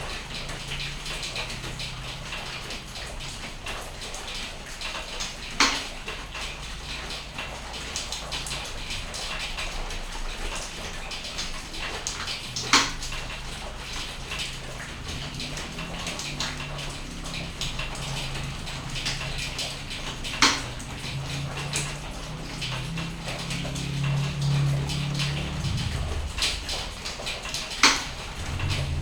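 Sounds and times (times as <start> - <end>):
rain pattering: 0.0 - 29.0
low steady hum: 12.5 - 29.0.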